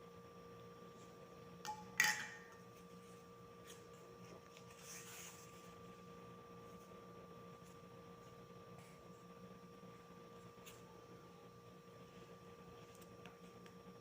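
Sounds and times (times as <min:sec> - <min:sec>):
electrical hum with high whine: 0:00.0 - 0:14.0
soft scrape or rustle: 0:02.8 - 0:06.0.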